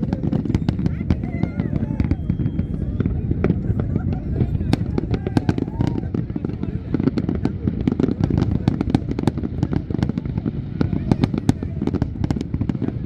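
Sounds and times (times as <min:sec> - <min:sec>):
fireworks cracking: 0:00.0 - 0:13.0
low rumble of bursts: 0:00.0 - 0:13.0.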